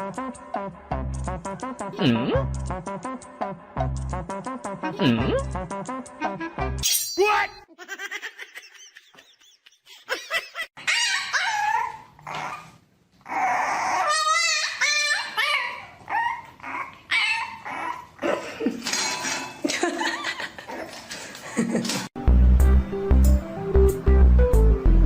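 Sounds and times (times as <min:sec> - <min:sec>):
dog whining and yipping: 0:10.8 - 0:18.2.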